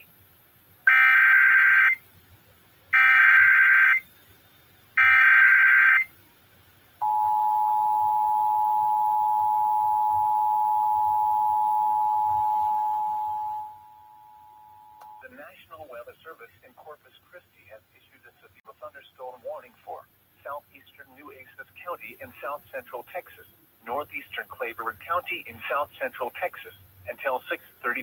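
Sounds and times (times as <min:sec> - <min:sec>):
two-tone attention signal: 0:07.0 - 0:15.2.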